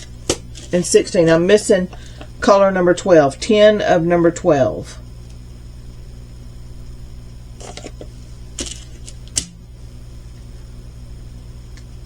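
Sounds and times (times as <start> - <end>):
low hum: 0.0 - 12.0
plastic bags crinkling: 8.6 - 9.4.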